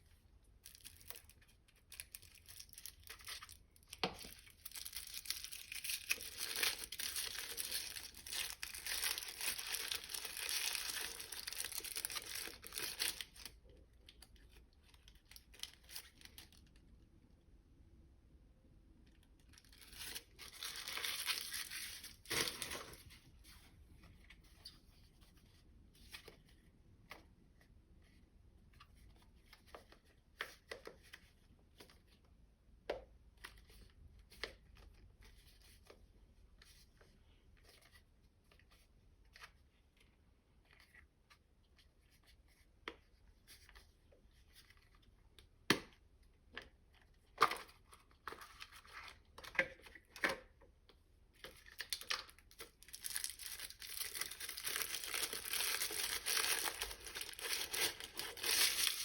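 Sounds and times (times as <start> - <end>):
plastic crinkling and tearing: 0.6 - 13.6, 19.5 - 23.0, 51.6 - 59.0.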